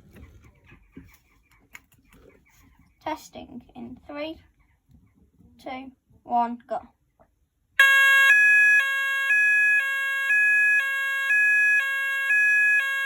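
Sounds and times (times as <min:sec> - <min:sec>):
two-tone fire alarm: 0:07.8 - 0:13.0.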